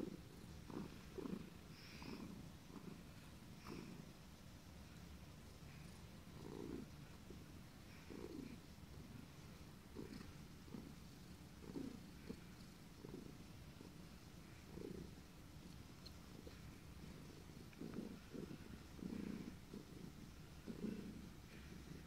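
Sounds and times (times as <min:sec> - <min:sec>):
cat purring: 0:00.0 - 0:22.0.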